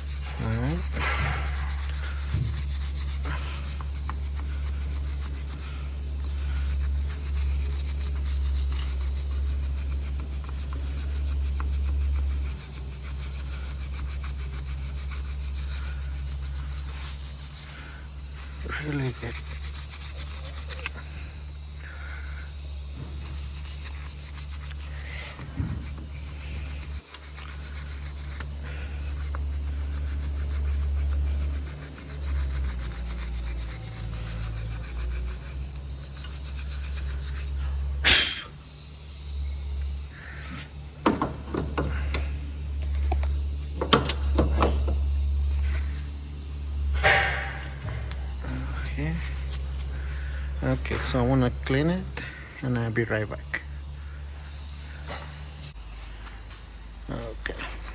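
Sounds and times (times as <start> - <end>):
wire brush scrubbing metal: 0.0 - 38.4, 46.8 - 53.3, 56.0 - 57.9
steady low hum: 0.0 - 57.9
sharp knocks: 41.0 - 42.2, 43.8 - 45.0, 47.0 - 48.1.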